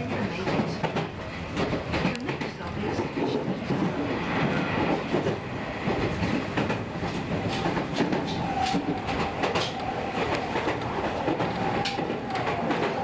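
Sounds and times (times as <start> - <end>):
rail clicks: 0.0 - 13.0
train wheels rumbling on track: 0.0 - 13.0.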